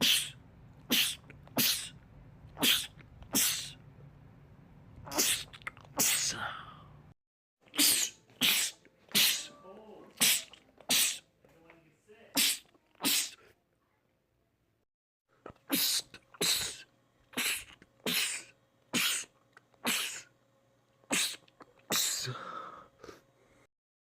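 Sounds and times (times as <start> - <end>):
man sneezing: 0.0 - 1.9, 2.6 - 3.8, 5.1 - 6.6, 7.7 - 9.6, 10.2 - 11.2, 12.3 - 13.4, 15.7 - 20.3, 21.1 - 23.2.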